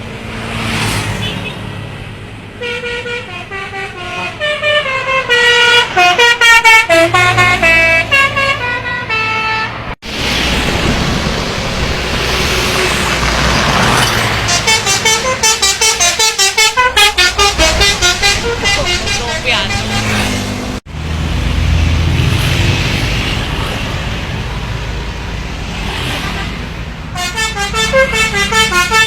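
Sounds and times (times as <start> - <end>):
engine and road noise: 0.0 - 29.0
melodic bus air horn: 2.6 - 9.9, 14.4 - 20.5, 26.3 - 29.0.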